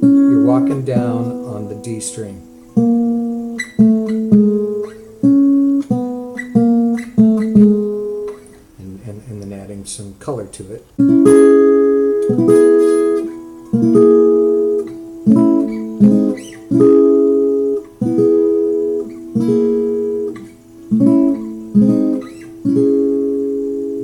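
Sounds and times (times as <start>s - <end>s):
acoustic guitar chords strummed: 0.0s - 9.4s, 10.3s - 24.0s.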